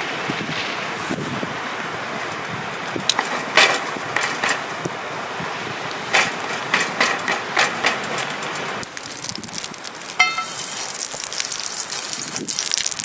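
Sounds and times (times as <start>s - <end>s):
steady rushing noise: 0.0s - 10.8s
sharp knocks and clicks: 6.1s - 8.7s.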